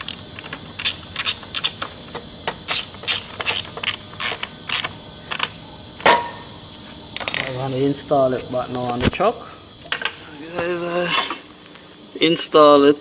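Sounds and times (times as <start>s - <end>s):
hand tools clicking: 0.0s - 5.5s.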